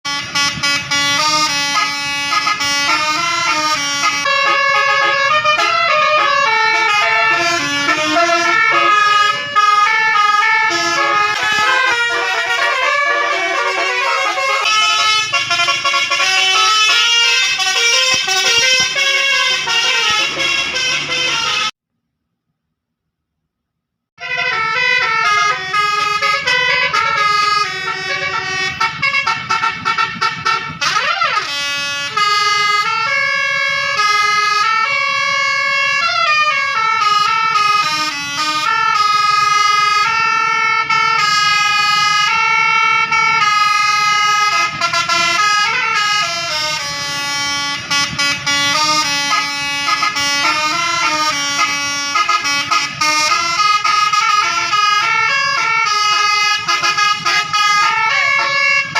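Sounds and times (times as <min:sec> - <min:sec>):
bus horn playing melody: 0:00.0 - 0:21.8, 0:24.2 - 0:58.9.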